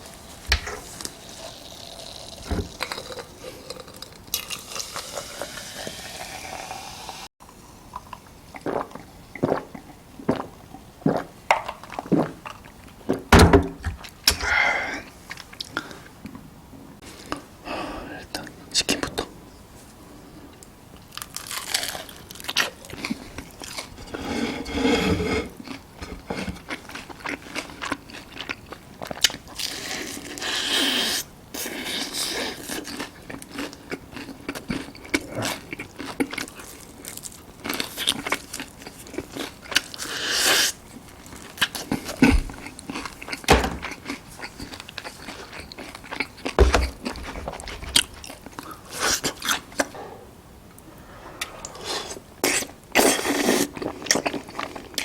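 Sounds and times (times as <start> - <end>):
crunchy chicken being chewed: 21.1 - 24.1, 25.5 - 50.0, 51.9 - 55.0.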